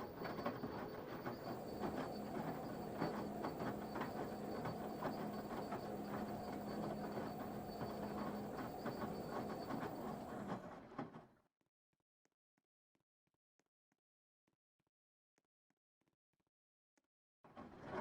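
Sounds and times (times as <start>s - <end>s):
washing machine motor hum: 0.0s - 10.6s.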